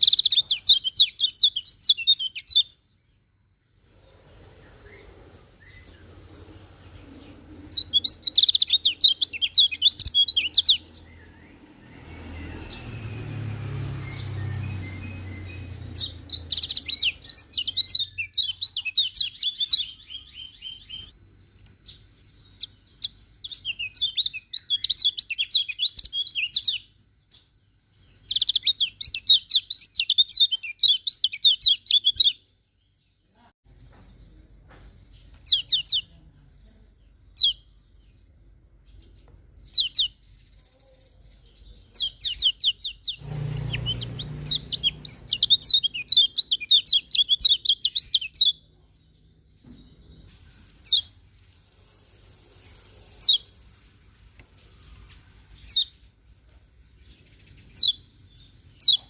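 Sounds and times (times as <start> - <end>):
bird twittering high chirps: 0.0 - 3.8, 4.4 - 51.2, 52.6 - 53.6, 54.7 - 56.1, 56.9 - 59.0.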